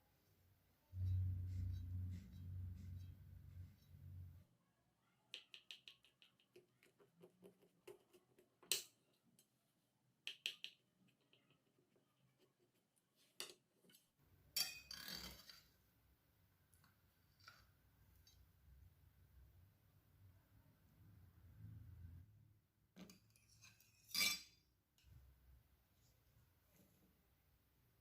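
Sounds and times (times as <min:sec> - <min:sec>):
cutlery clinking on dishes: 0:14.6 - 0:15.3.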